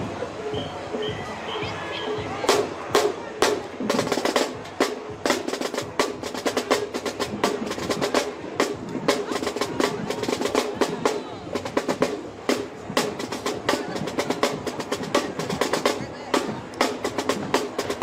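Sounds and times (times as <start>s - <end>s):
drumline playing snare cadence: 0.4s - 18.0s.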